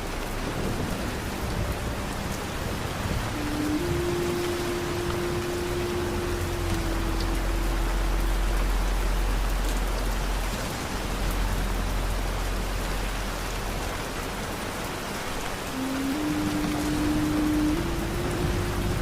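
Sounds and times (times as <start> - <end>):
deep low rumble: 0.0 - 19.0
steady rain hiss: 0.0 - 19.0
soft held musical note: 1.4 - 13.9.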